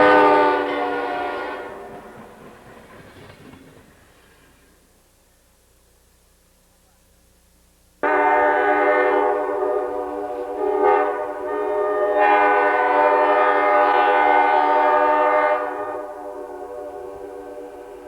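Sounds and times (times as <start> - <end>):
locomotive air horn chord: 0.0 - 2.0, 8.0 - 18.0.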